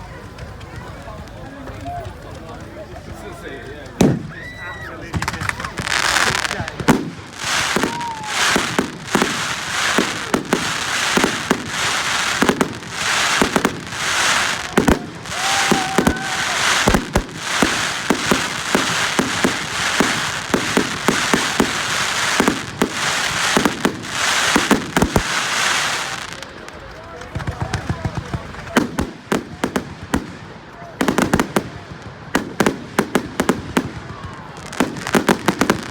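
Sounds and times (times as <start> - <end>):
firework bangs and crackling: 0.0 - 35.9
firework whistling: 4.1 - 26.4.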